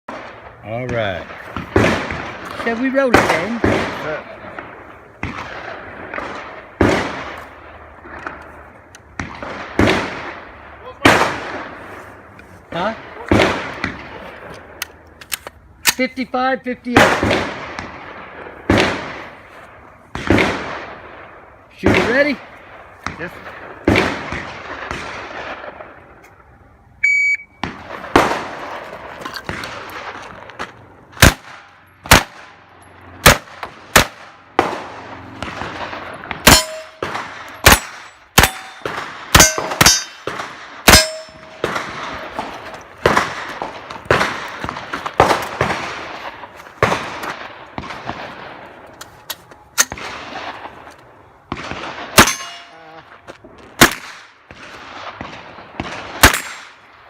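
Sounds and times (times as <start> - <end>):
carbine gunshots echoing: 0.1 - 12.3, 12.9 - 15.0, 16.9 - 49.0, 49.6 - 57.0
shot timer beep: 27.0 - 27.6
steel target ringing: 36.4 - 37.0, 37.6 - 40.3, 40.9 - 41.7, 52.2 - 52.8.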